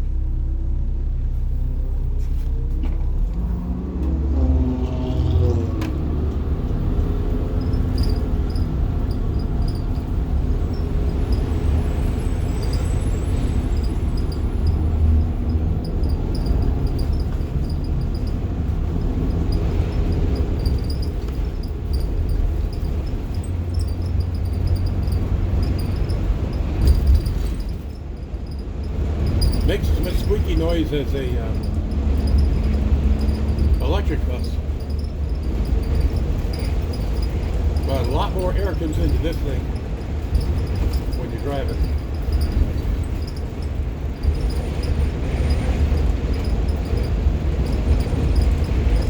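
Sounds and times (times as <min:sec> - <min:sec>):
bus body squeaks and rattles: 0:00.0 - 0:49.0
bus diesel engine rumbling: 0:00.0 - 0:49.0.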